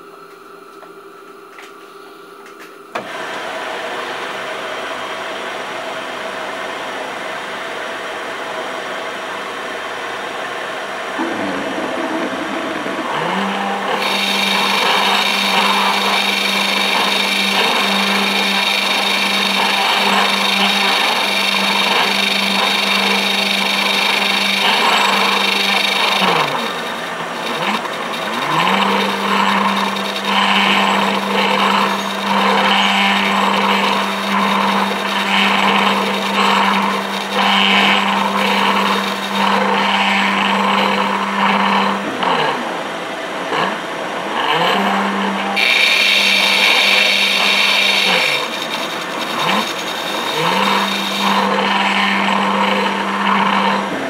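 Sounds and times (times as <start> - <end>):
milling machine spindle humming: 9.8 - 42.2, 44.5 - 54.0
high metal cutting noise: 11.2 - 42.0, 44.5 - 54.0.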